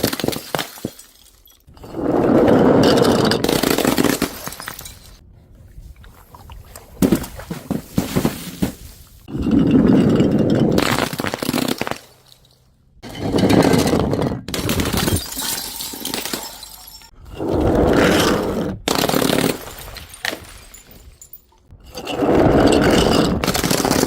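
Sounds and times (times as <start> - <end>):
glass breaking: 10.2 - 17.2
sharp glass clinks: 15.2 - 17.1.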